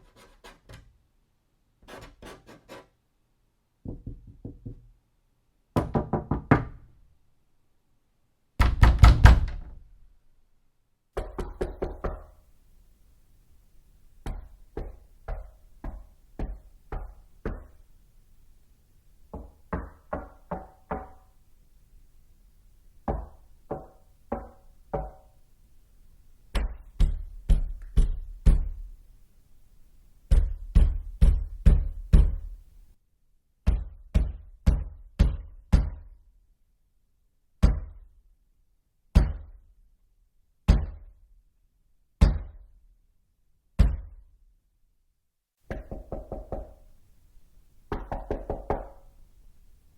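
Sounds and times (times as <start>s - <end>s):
knocking on doors: 3.8s - 4.9s, 5.8s - 6.8s, 23.1s - 25.3s, 45.7s - 46.8s, 47.9s - 49.0s.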